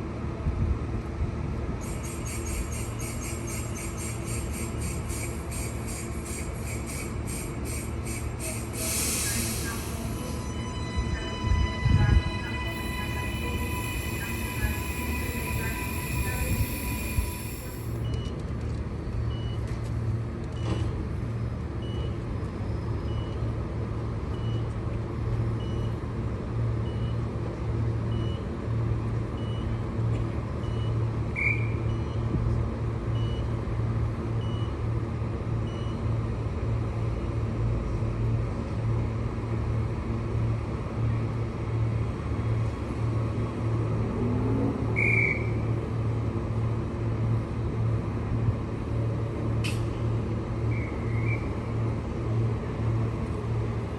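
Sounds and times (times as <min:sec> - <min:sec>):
train low hum: 0:00.0 - 0:53.9
faint short beeps: 0:09.2 - 0:18.3.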